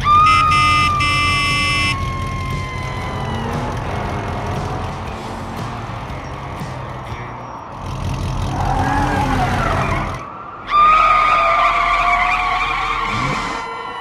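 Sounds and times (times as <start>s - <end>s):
high squeal: 8.5s - 14.0s.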